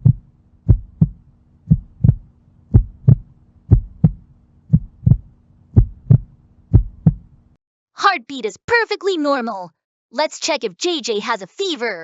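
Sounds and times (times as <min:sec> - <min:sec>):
heartbeat thumps: 0:00.0 - 0:07.3
faint low hum: 0:00.0 - 0:07.6.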